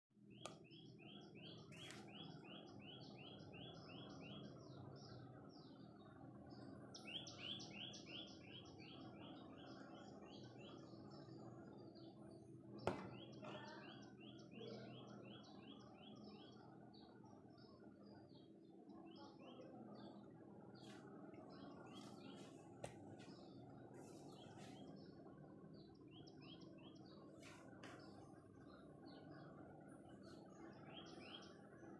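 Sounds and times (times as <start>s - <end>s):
small bird chirping: 0.3s - 4.9s, 12.9s - 31.9s.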